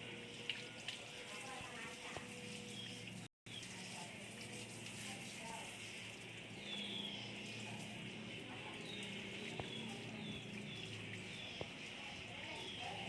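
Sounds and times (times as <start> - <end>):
bird chirping: 6.6 - 7.6.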